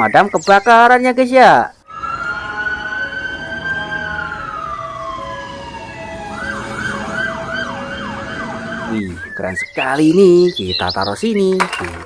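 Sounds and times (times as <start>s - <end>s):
fire engine siren: 1.9s - 9.4s.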